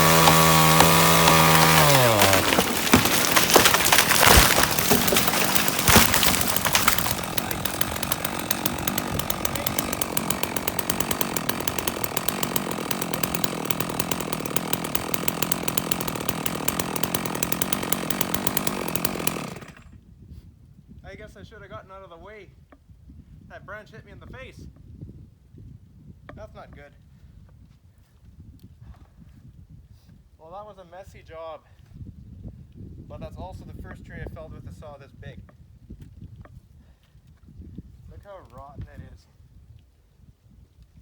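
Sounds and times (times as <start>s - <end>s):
chainsaw running: 0.0s - 19.8s
tree cracking and falling: 0.0s - 19.8s.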